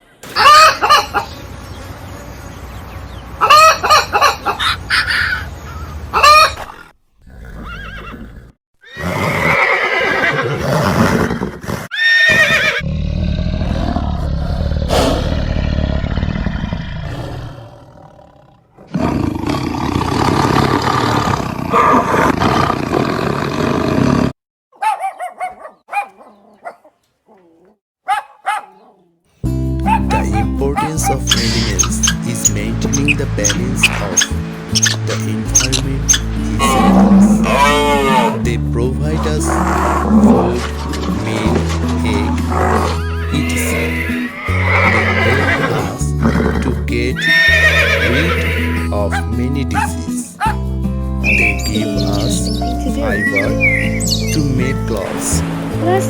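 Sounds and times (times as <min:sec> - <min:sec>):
animal calls: 0:00.2 - 0:01.9, 0:03.3 - 0:08.2, 0:24.8 - 0:29.2, 0:29.8 - 0:38.6, 0:39.2 - 0:46.6, 0:47.2 - 0:50.6, 0:51.2 - 0:55.0.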